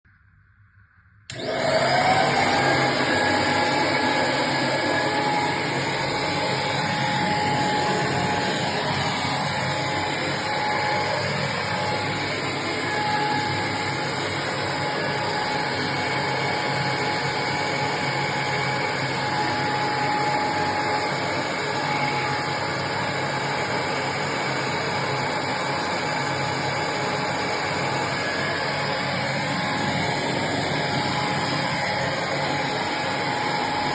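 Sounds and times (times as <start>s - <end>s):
vacuum cleaner whining: 1.3s - 33.9s.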